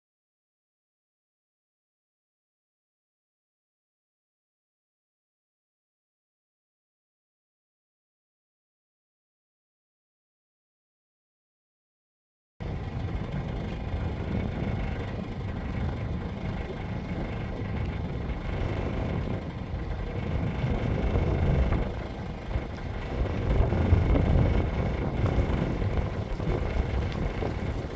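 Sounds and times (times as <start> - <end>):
faint steady whine: 12.6 - 27.9
road and engine rumble: 12.6 - 27.9
wind noise: 12.6 - 27.9.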